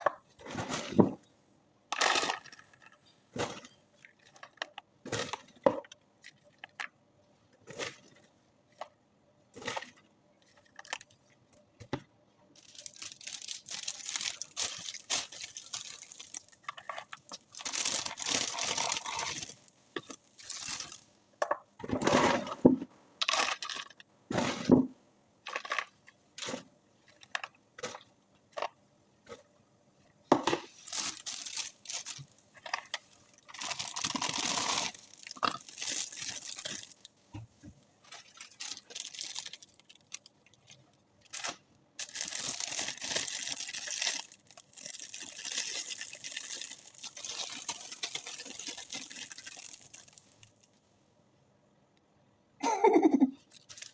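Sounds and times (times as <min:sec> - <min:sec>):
popcorn packaging crinkling: 0:01.9 - 0:06.9, 0:09.6 - 0:11.8, 0:12.6 - 0:21.1, 0:23.2 - 0:24.0, 0:25.5 - 0:29.4, 0:30.5 - 0:37.2, 0:38.0 - 0:50.8, 0:53.4 - 0:53.9
packaging rustling: 0:12.6 - 0:21.0, 0:25.5 - 0:28.7, 0:30.7 - 0:37.1, 0:38.0 - 0:50.7, 0:53.5 - 0:53.9.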